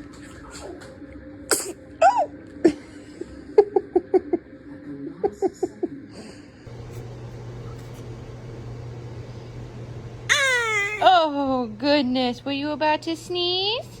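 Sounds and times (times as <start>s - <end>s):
baby sneezing: 1.5s - 1.8s
baby squeaking: 10.3s - 11.1s.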